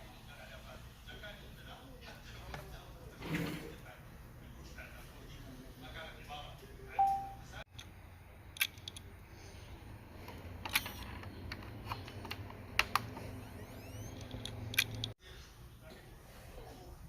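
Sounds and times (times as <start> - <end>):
low steady hum: 6.8 - 15.8.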